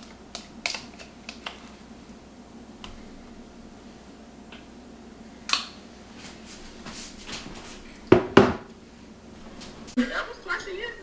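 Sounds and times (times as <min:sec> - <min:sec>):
loud knocks: 0:08.1 - 0:08.7.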